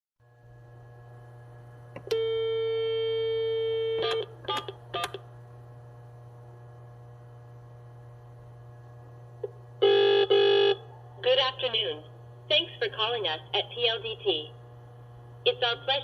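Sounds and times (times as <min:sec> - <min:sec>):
steady low hum: 0:00.2 - 0:16.0
phone dial tone: 0:02.0 - 0:05.2.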